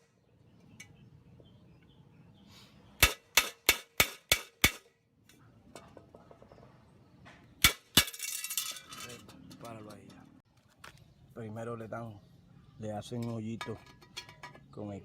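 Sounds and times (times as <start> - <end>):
hammer striking nail into metal: 3.0 - 4.9.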